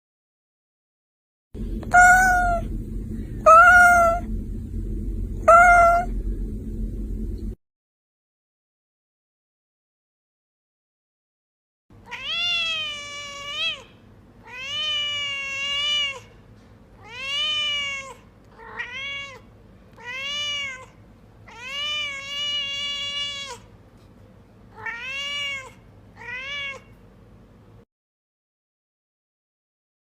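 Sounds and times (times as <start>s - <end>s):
cat meowing: 1.8s - 2.7s, 3.4s - 4.3s, 5.4s - 6.1s, 12.0s - 16.3s, 17.0s - 23.7s, 24.7s - 27.0s.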